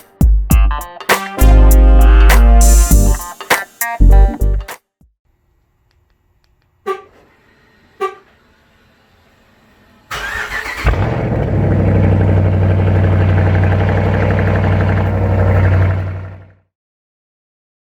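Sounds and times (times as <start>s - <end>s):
car engine starting and idling: 7.1s - 16.6s.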